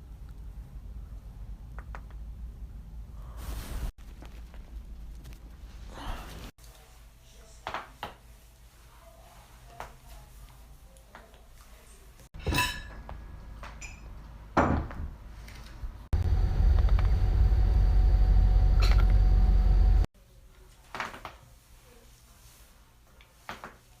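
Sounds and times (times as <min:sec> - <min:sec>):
low rumble: 0:16.2 - 0:20.1.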